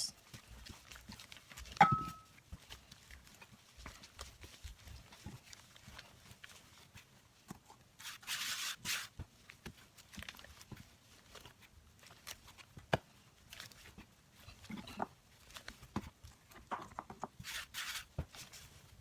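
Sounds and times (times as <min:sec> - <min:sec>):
dough being kneaded by hand: 0:00.1 - 0:19.0.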